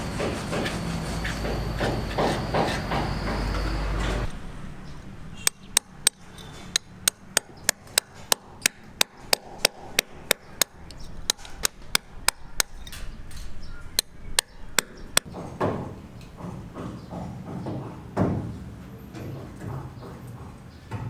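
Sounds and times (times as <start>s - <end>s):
hammer ringing blows: 0.0s - 15.3s.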